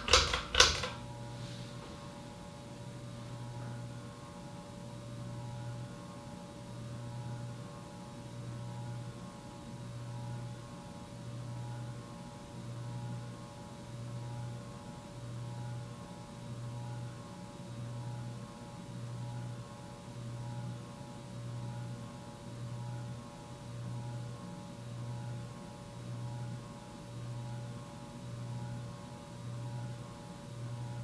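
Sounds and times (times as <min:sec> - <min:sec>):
ceiling fan motor humming: 0:00.0 - 0:04.2.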